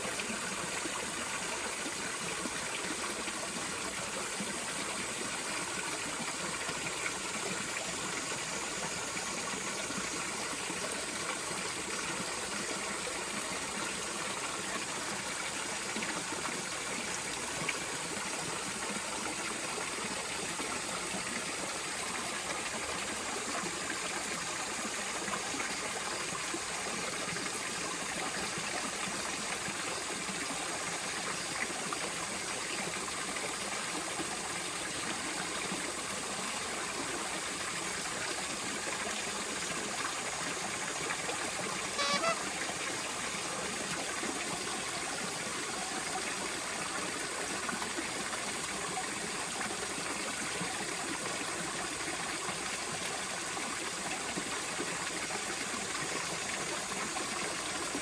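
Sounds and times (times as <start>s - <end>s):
flowing water rushing: 0.0s - 58.0s
brief high sound: 42.0s - 42.5s.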